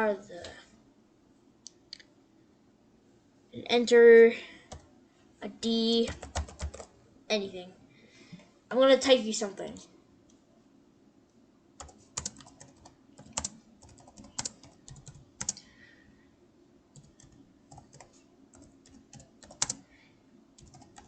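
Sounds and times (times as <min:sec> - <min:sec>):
typing on keyboard: 0:06.1 - 0:06.9, 0:11.8 - 0:15.6, 0:17.0 - 0:19.9, 0:20.6 - 0:21.0.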